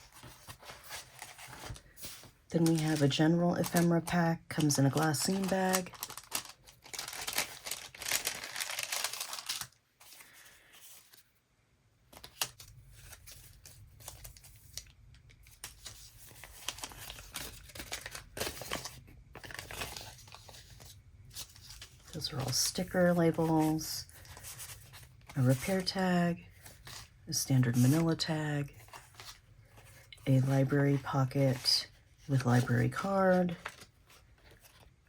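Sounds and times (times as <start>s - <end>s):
paper shuffling: 0.0s - 11.2s, 15.4s - 25.9s, 26.6s - 31.8s, 32.4s - 34.9s
paper bag crinkling: 0.2s - 10.4s.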